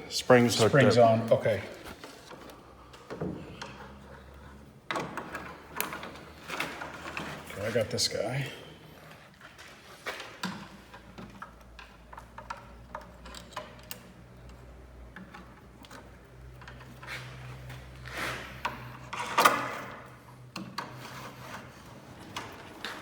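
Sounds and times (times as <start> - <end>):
wood scraping: 16.4 - 19.4.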